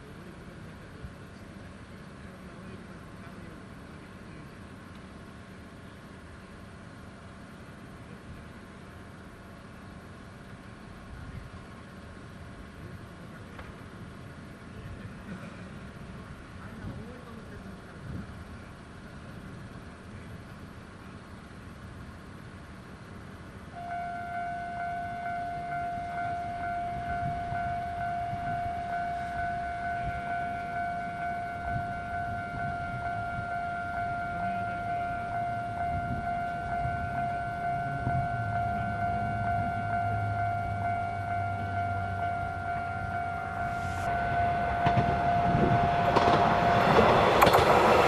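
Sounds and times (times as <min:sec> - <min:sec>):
diesel railcar rumble: 0:00.0 - 0:48.0
level crossing warning tone: 0:23.7 - 0:48.0.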